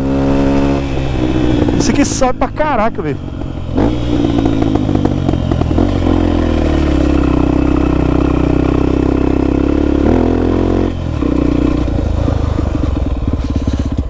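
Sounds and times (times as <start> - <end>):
motorcycle engine revving uphill: 0.0 - 14.0.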